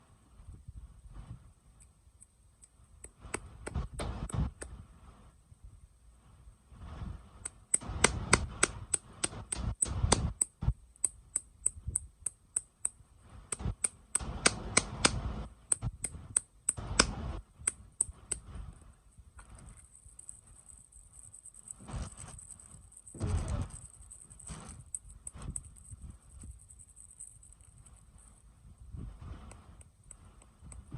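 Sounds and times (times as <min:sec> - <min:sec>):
sharp plastic clicks and taps: 0:07.4 - 0:18.5
packaging rustling and crinkling: 0:19.5 - 0:28.4.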